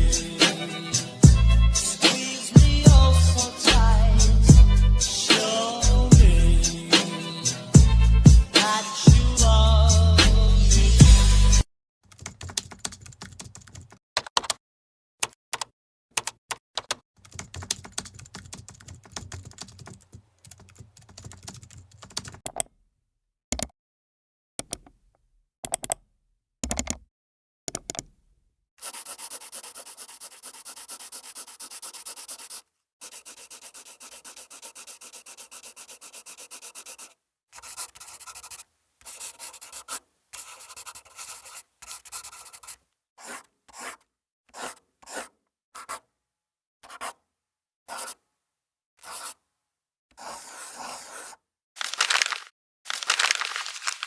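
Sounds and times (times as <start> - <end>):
sharp clicks and taps: 22.4 - 22.7, 23.5 - 23.7, 24.6 - 25.0, 25.6 - 26.0, 26.6 - 27.0, 27.7 - 28.1.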